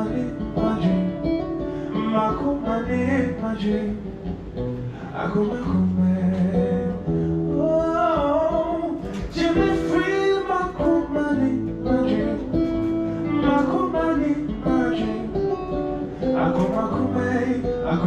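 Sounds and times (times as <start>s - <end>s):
person singing: 0.0s - 4.2s, 4.9s - 18.0s
guitar chords: 0.0s - 18.0s.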